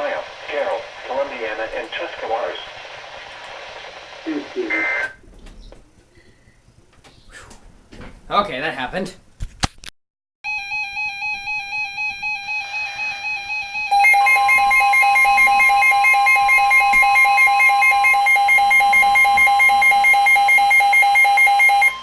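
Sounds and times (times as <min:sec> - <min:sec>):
pulsing electronic alarm beep: 0:10.5 - 0:22.0
steady warning alarm tone: 0:10.5 - 0:22.0.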